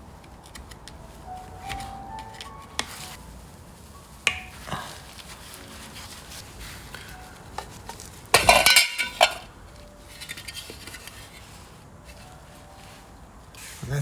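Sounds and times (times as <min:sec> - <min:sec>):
metal parts clinking and knocking: 0:08.3 - 0:09.5.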